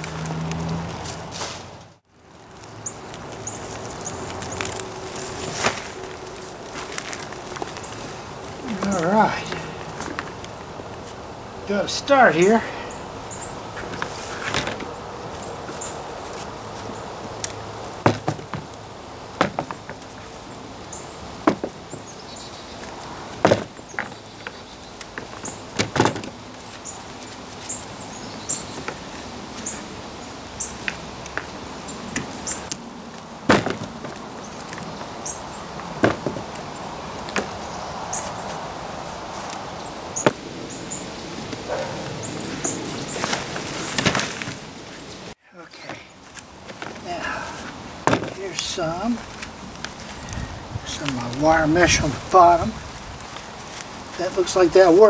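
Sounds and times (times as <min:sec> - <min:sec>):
soil rustling: 0:00.0 - 0:55.0
sharp knocks and scrapes: 0:13.8 - 0:14.9, 0:18.0 - 0:18.8, 0:19.4 - 0:20.4, 0:21.4 - 0:22.0, 0:23.4 - 0:26.4, 0:33.5 - 0:34.9.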